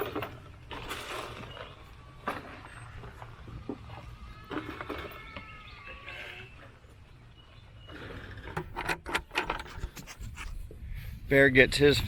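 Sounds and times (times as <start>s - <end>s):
goat bleating: 3.9s - 6.8s.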